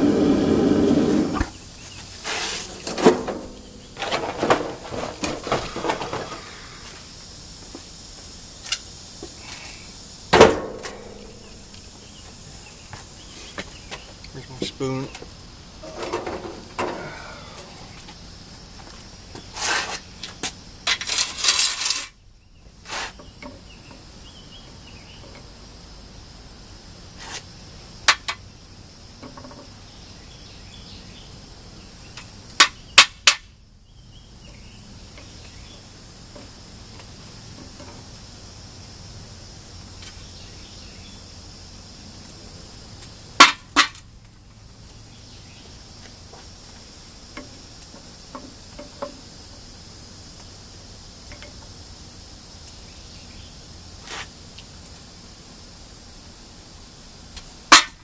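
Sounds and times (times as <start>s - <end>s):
insects chirring: 0.0s - 58.0s
short clattering: 2.2s - 6.6s, 15.8s - 17.6s.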